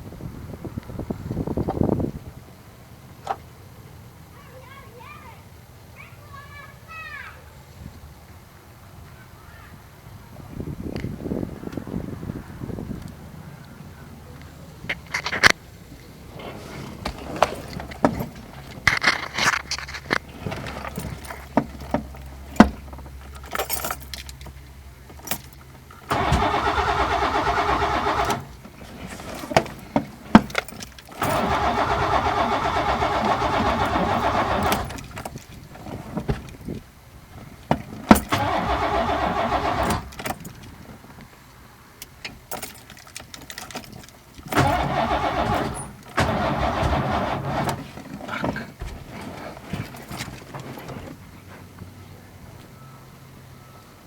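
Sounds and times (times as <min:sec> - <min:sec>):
keys jingling: 0:17.2 - 0:26.1, 0:28.9 - 0:31.4, 0:42.3 - 0:44.7
starter motor cranking engine: 0:26.0 - 0:35.9, 0:38.2 - 0:40.2, 0:44.4 - 0:49.8.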